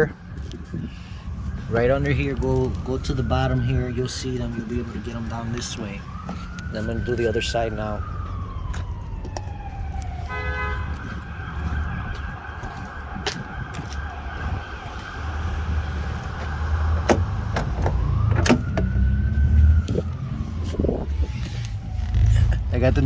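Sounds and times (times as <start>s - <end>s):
emergency vehicle siren wailing: 0.0s - 23.0s
short horn blare: 10.3s - 10.9s.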